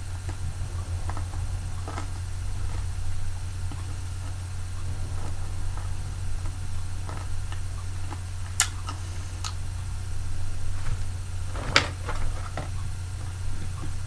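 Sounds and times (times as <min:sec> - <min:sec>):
steady low hum: 0:00.0 - 0:14.0
eating crunches and clicks: 0:07.0 - 0:09.7.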